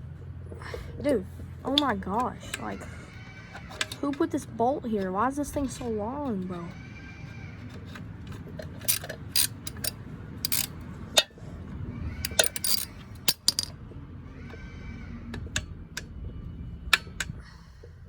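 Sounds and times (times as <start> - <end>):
wrench clinking on metal: 8.6 - 11.3, 12.2 - 13.7.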